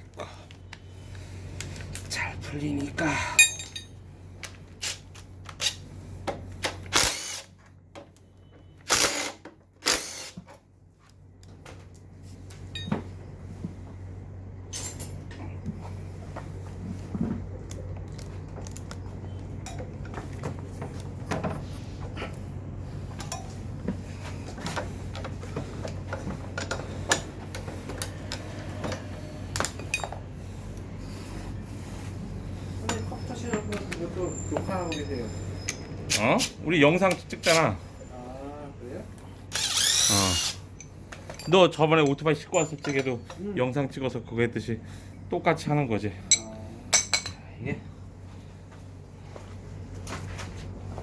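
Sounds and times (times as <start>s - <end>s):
steady low hum: 0.0s - 51.0s
power tool bursts: 6.9s - 7.5s, 8.9s - 10.4s, 39.5s - 40.7s.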